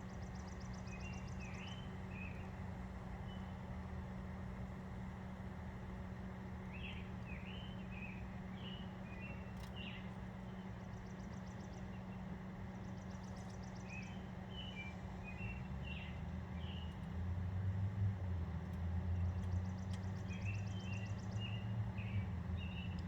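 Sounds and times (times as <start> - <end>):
small birds chirping: 0.0 - 3.6, 6.6 - 17.2, 18.7 - 23.0.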